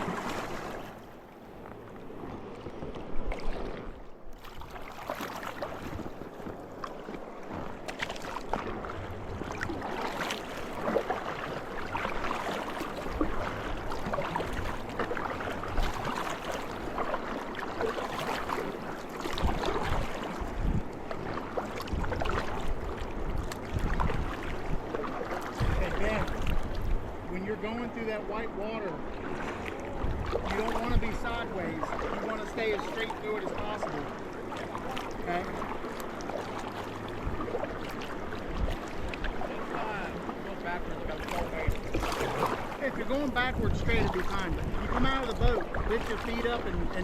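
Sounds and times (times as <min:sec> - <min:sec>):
river water rushing and splashing: 0:00.0 - 0:47.0
wind rumble on microphone: 0:18.1 - 0:27.5, 0:29.3 - 0:34.0, 0:36.9 - 0:47.0.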